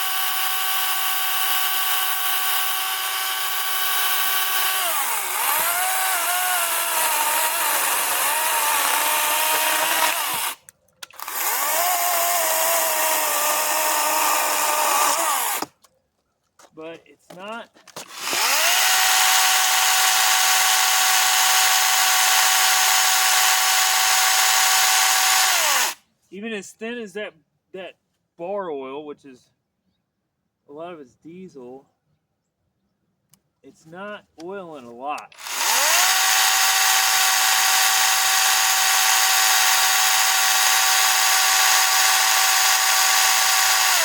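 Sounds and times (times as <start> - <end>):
battery chainsaw running: 0.0 - 10.6, 11.2 - 15.7, 18.1 - 26.0, 35.4 - 44.0.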